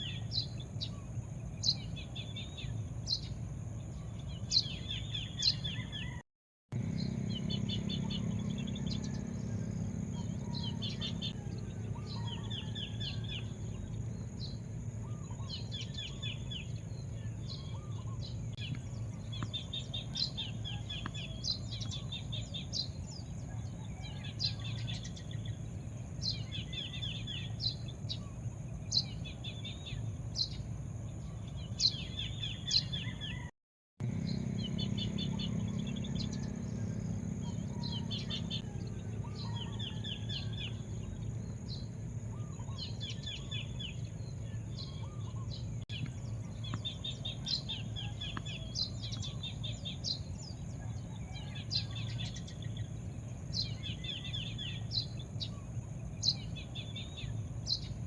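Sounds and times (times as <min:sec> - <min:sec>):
small birds chirping: 0:00.0 - 0:06.2, 0:06.8 - 0:58.0
constant high whine: 0:06.8 - 0:33.4, 0:34.0 - 0:58.0
steady low rumble: 0:34.0 - 0:58.0.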